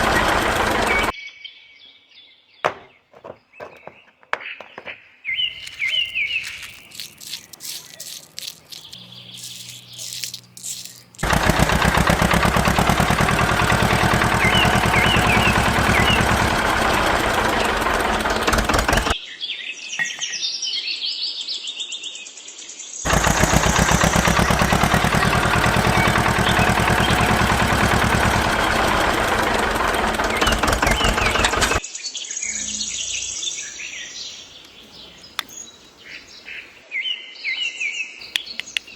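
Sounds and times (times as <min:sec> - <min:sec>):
birds chirping: 0:00.0 - 0:01.1, 0:02.3 - 0:19.2, 0:23.1 - 0:36.8, 0:38.2 - 0:38.9
small motorized tool running: 0:00.0 - 0:01.1, 0:06.9 - 0:19.2, 0:23.1 - 0:31.8.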